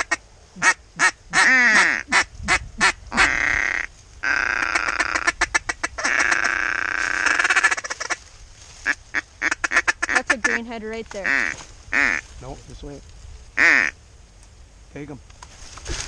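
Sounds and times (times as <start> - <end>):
duck call quacking: 0.0 - 8.2, 8.8 - 12.2, 13.6 - 14.0.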